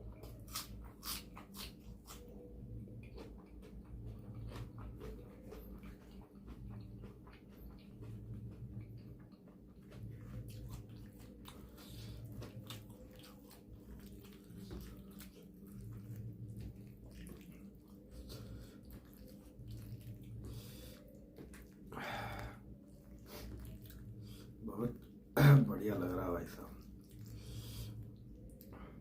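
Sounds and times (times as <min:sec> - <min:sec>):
low room hum: 0:00.0 - 0:29.0
person chewing: 0:00.1 - 0:25.1, 0:26.8 - 0:28.8.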